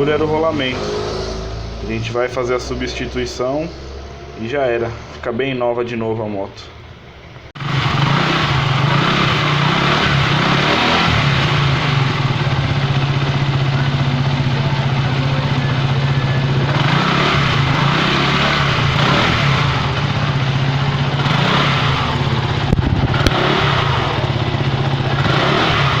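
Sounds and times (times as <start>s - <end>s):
scooter engine running: 7.6s - 26.0s.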